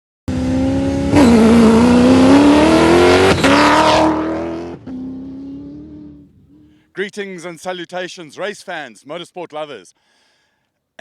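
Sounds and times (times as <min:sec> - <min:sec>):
race car engine accelerating: 0:00.3 - 0:06.6.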